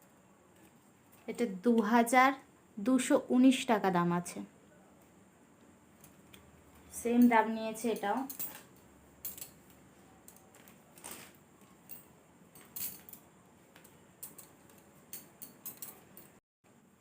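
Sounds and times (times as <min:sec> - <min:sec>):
packaging rustling and clicks: 0:10.3 - 0:11.4.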